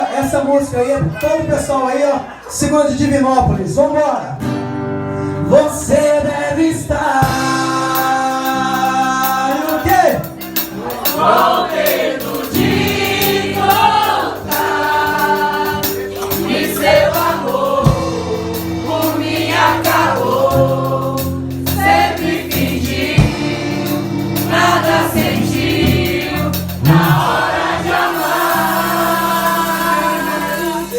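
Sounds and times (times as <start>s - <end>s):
crowd singing in chorus: 6.0s - 9.8s, 10.4s - 30.9s
live band playing chords: 7.0s - 30.9s.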